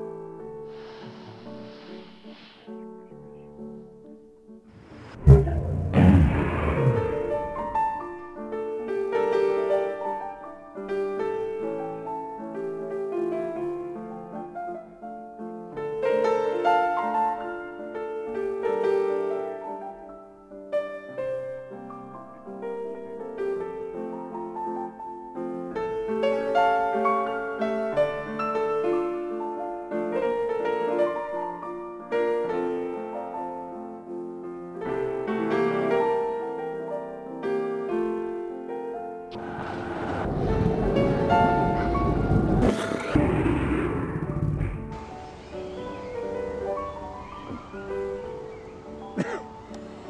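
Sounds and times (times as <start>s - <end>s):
piano music: 44.8s - 50.0s.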